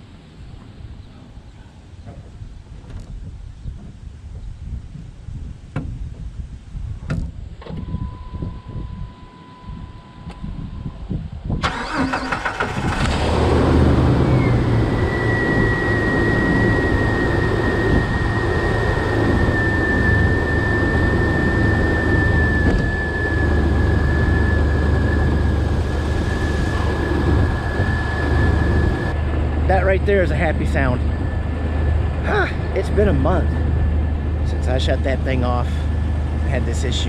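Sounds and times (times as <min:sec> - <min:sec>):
high whine: 0:07.7 - 0:37.0
car engine starting and idling: 0:11.6 - 0:37.0.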